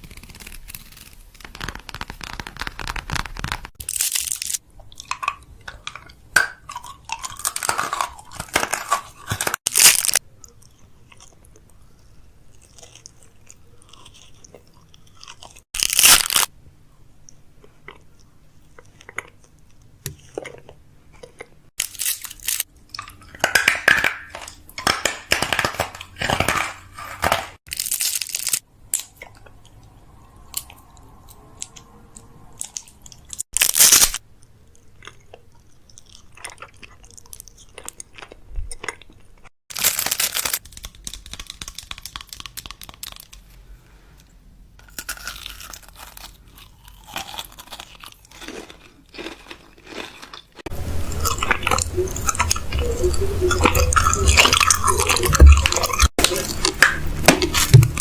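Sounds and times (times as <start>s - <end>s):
crunching: 0.0s - 16.5s, 44.8s - 58.0s.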